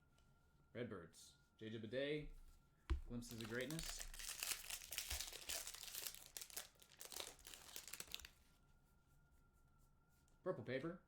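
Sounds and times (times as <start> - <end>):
wrapper crinkling and tearing: 3.0 - 8.4.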